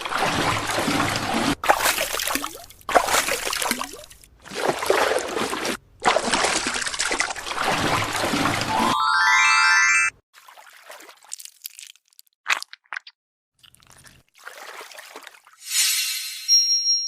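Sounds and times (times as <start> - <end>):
liquid trickling and gurgling: 13.6 - 15.6.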